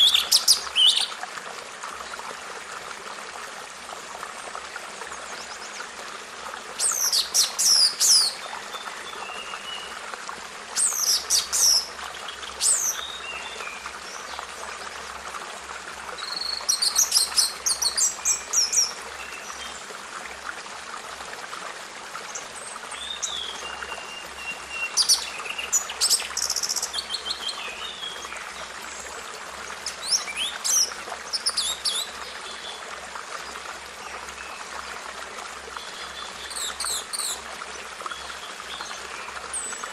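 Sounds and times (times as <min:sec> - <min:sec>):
running water: 0:00.0 - 0:39.9
songbird chirping: 0:29.8 - 0:32.8.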